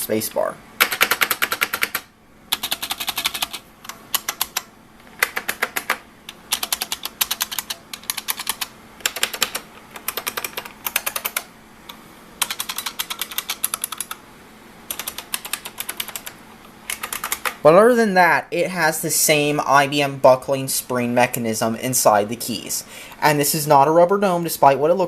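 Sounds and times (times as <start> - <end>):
clicky keyboard typing: 0.8 - 14.2, 14.9 - 17.6.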